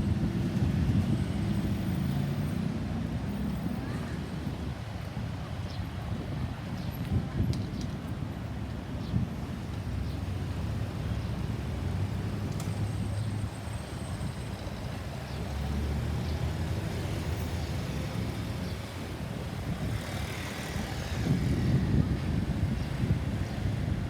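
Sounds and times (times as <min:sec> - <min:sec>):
road traffic rumbling past: 0:14.9 - 0:24.0.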